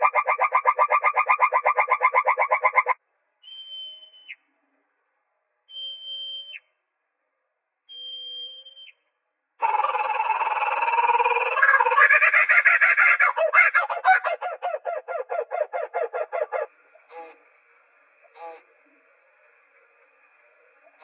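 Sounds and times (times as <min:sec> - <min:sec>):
high whistled animal calls: 0:00.0 - 0:04.4
harsh raspy call: 0:09.6 - 0:17.4.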